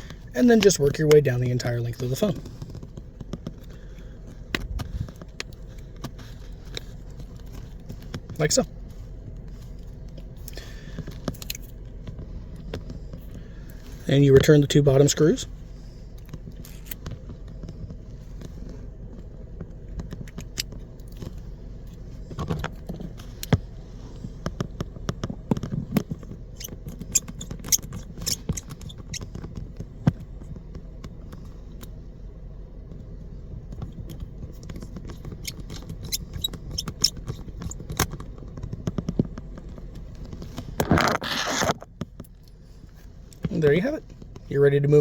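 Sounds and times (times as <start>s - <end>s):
low steady hum: 0.0s - 45.0s
small metallic clicks: 24.4s - 32.0s, 33.7s - 42.6s.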